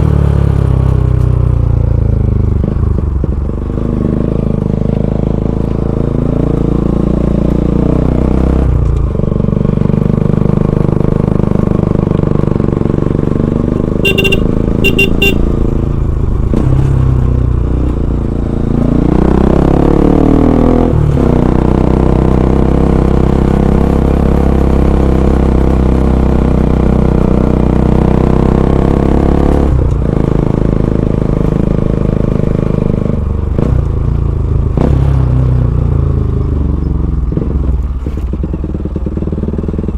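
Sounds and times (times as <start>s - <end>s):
motorcycle engine revving: 0.0s - 39.9s
short high beeps: 14.0s - 15.4s.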